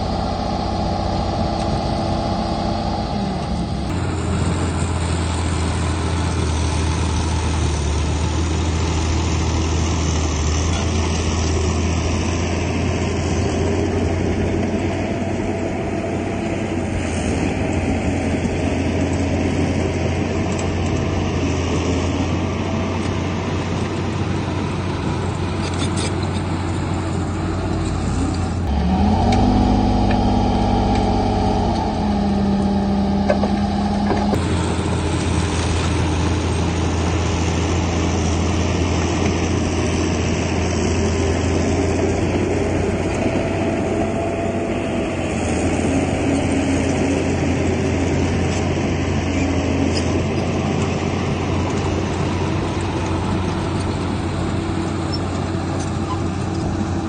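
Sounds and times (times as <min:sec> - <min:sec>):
engine pitched note rising: 0:00.0 - 0:05.8, 0:28.6 - 0:35.4
heavy diesel engines running: 0:00.0 - 0:57.0.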